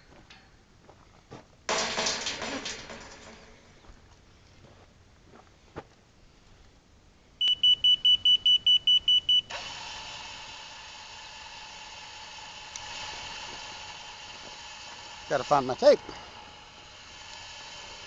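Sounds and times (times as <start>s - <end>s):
rapid high beeps: 7.4s - 9.5s
motor whine: 9.4s - 18.0s.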